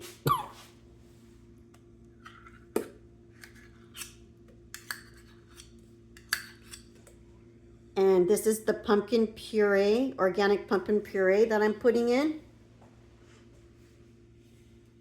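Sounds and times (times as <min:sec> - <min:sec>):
faint steady hum: 0:00.0 - 0:15.0
kitchen utensils clicking and scraping: 0:04.8 - 0:07.0.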